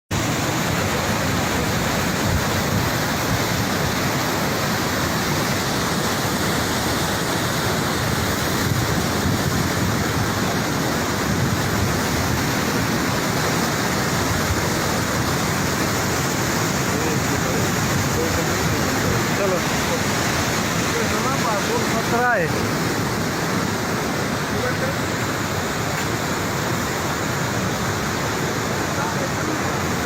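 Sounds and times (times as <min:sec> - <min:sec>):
rushing floodwater: 0:00.1 - 0:30.0.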